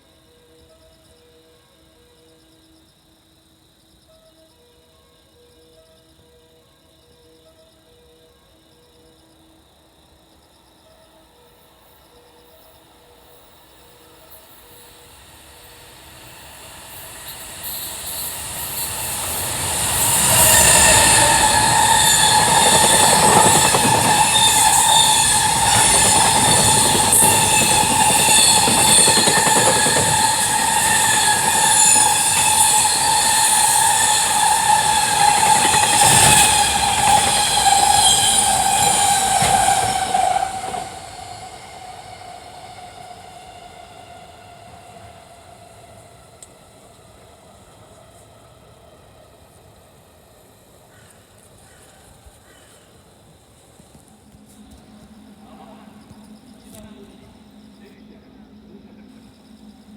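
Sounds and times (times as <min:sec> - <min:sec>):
freight train passing: 0:11.0 - 0:59.9.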